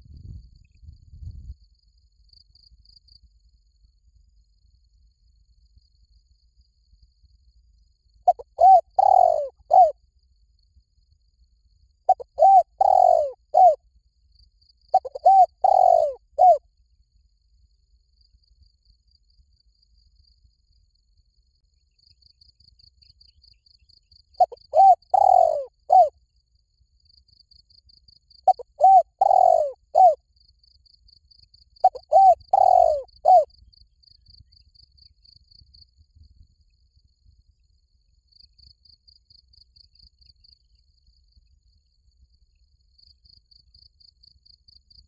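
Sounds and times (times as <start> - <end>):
dove cooing: 8.3 - 9.9, 12.1 - 13.8, 14.9 - 16.6, 24.4 - 26.1, 28.5 - 30.2, 31.8 - 33.5
insect rapid pulsing: 8.3 - 9.9, 12.1 - 13.8, 15.0 - 16.6, 23.6 - 26.1, 28.4 - 30.2, 31.8 - 36.0.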